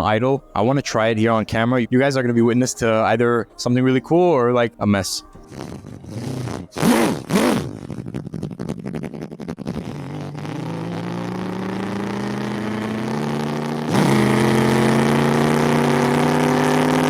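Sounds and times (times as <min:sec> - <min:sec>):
man imitating engine with mouth: 0:05.4 - 0:17.0.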